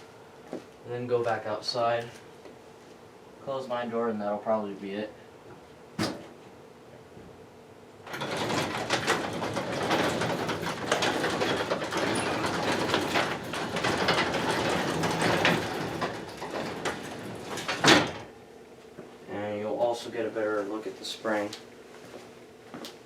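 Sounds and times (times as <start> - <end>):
garage door rattling down tracks: 8.0 - 18.4.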